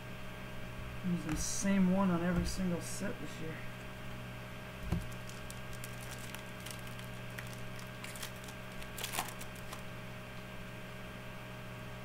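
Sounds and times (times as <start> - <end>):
electrical hum: 0.0 - 12.0
trading cards rustling: 4.9 - 9.9.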